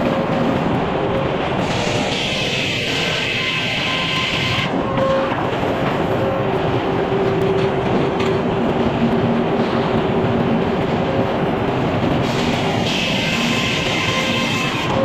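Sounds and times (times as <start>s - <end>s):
sawmill saw cutting a log: 12.8s - 15.0s.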